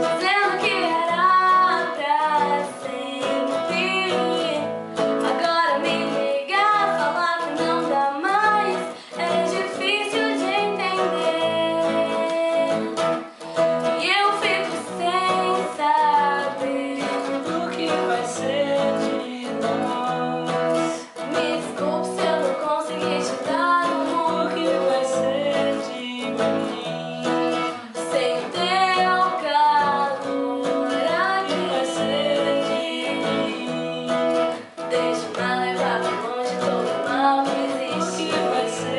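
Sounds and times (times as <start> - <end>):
strummed acoustic guitar: 0.0 - 38.9
woman singing pop ballad: 0.0 - 38.9.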